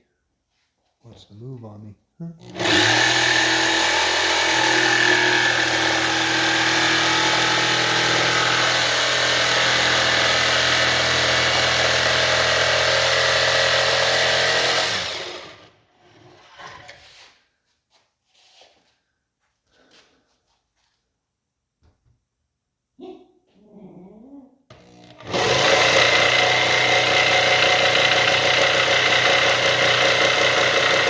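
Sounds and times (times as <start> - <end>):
power tool cutting metal: 2.4 - 15.7, 24.7 - 31.0.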